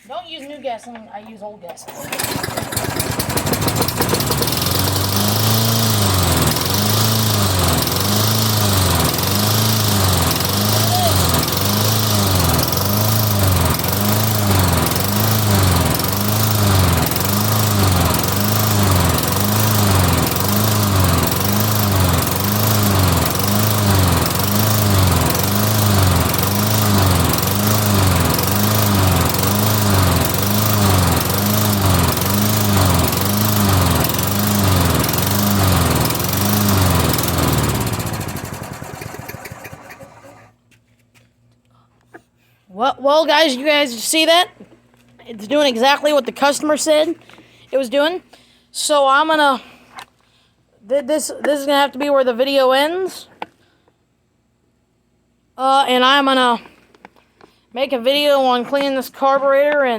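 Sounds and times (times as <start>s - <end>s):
lawn mower engine surging: 1.8s - 40.6s.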